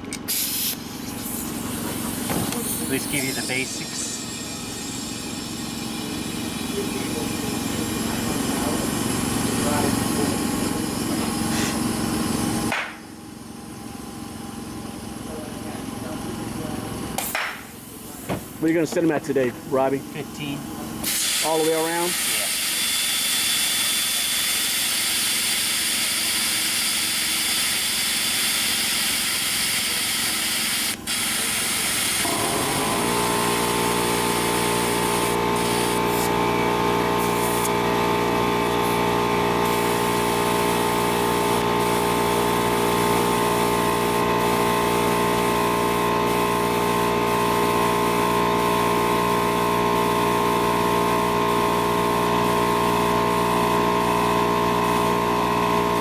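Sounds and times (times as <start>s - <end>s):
compressed air hissing: 0.3s - 12.7s, 17.2s - 49.1s
motor humming: 0.8s - 56.0s.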